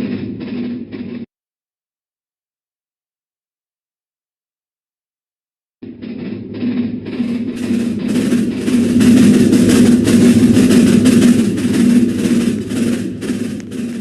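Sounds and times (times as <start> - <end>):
ceiling fan knocking: 5.9 - 14.0
wobbling ceiling fan hum: 5.9 - 14.0.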